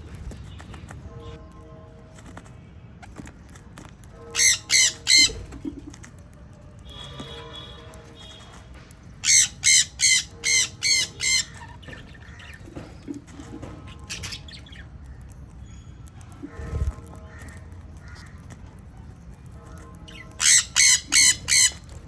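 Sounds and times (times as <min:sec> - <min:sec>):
parrot screeching squawks: 0:04.3 - 0:05.5, 0:09.2 - 0:12.6, 0:20.1 - 0:21.9.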